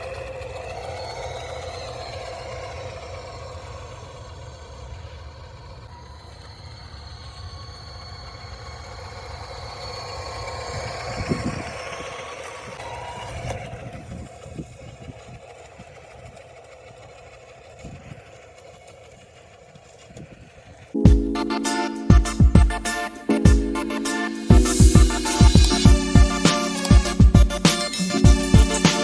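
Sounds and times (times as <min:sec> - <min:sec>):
toy car engine sound effect: 0:00.0 - 0:29.0.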